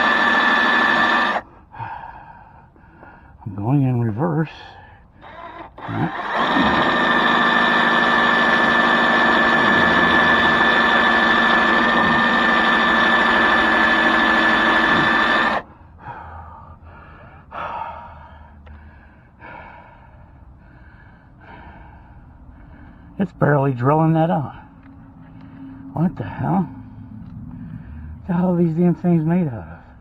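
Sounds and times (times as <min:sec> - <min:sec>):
electric drill whining: 0:00.0 - 0:01.4, 0:05.2 - 0:15.6
heavy breathing: 0:01.4 - 0:03.5, 0:15.6 - 0:23.2, 0:24.5 - 0:28.3.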